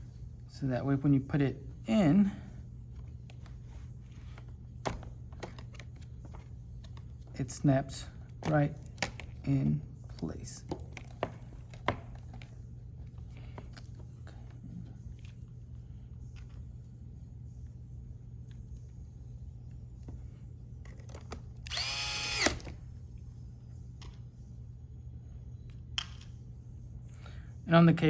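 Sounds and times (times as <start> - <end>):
steady low hum: 0.0 - 28.0
electric screwdriver whine: 21.6 - 22.8.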